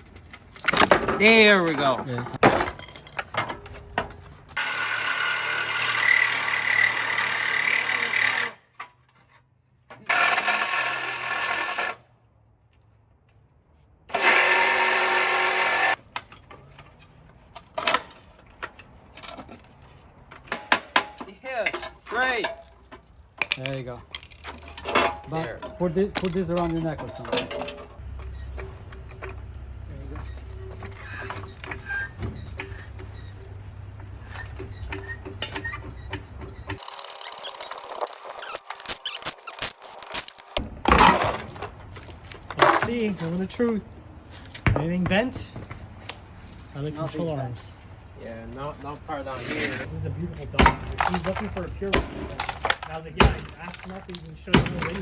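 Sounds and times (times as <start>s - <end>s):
power tool running: 4.6s - 8.6s, 14.1s - 16.0s
metal tools clicking and knocking: 20.2s - 29.4s.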